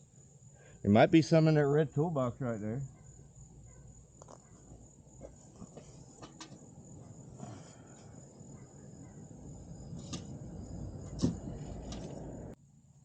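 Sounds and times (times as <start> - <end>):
rustling handling noise: 4.2 - 8.1.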